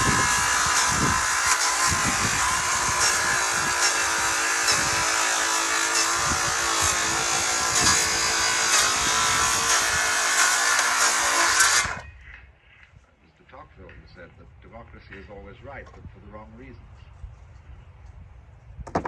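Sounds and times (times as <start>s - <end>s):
electric power tool buzzing: 0.0s - 12.0s.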